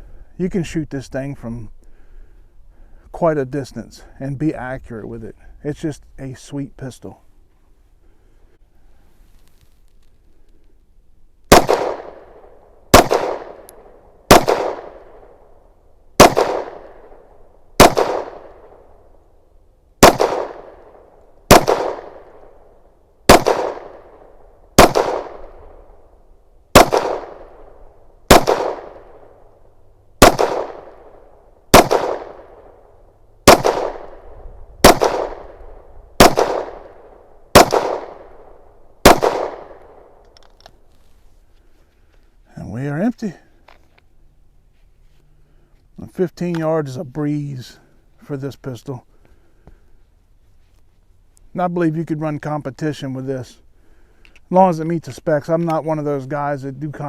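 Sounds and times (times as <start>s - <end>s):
pistol shots with ringing echo: 11.5s - 15.6s, 16.2s - 19.2s, 20.0s - 26.0s, 26.7s - 29.6s, 30.2s - 40.3s.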